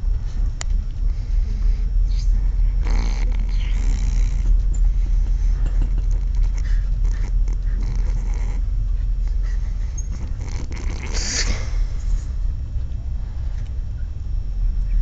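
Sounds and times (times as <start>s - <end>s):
steady low rumble: 0.0s - 15.0s
snoring: 2.1s - 8.7s, 9.3s - 12.0s.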